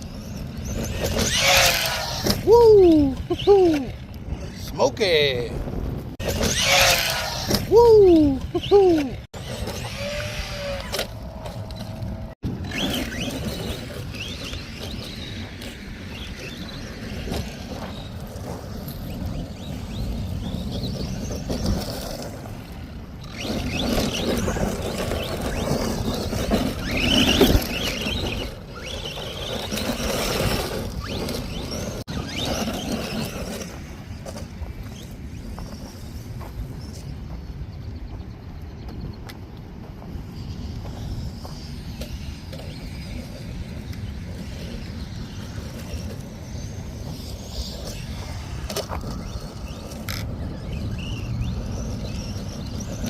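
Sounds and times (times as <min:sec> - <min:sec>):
electric motor whining: 0:08.6 - 0:35.7
tyres scrabbling over gravel: 0:09.4 - 0:37.5, 0:39.8 - 0:53.0.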